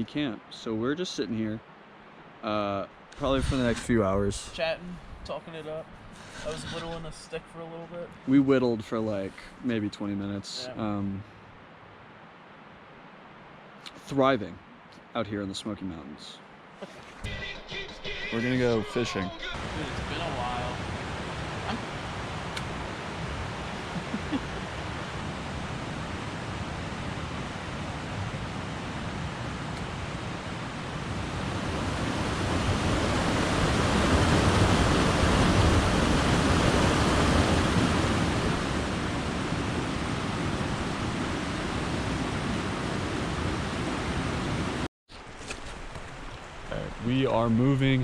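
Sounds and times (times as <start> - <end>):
rushing stream: 15.9 - 48.0.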